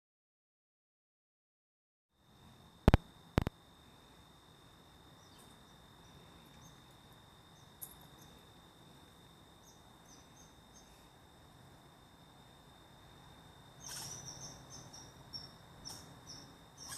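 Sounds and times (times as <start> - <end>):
sharp clicks: 2.9 - 3.5
high-pitched insect drone: 5.1 - 11.2, 12.3 - 16.9
bird chirps: 9.6 - 11.0, 13.8 - 16.9.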